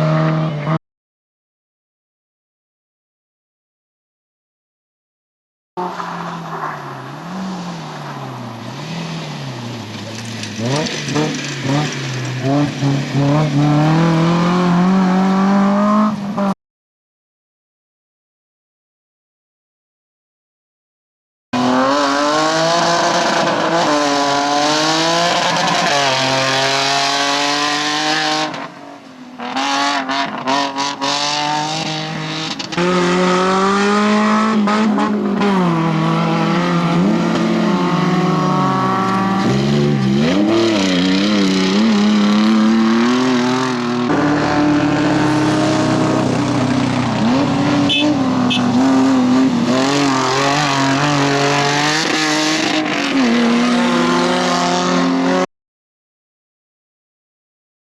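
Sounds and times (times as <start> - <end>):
off-road engines revving: 5.8 - 16.5, 21.6 - 28.7, 29.4 - 55.5.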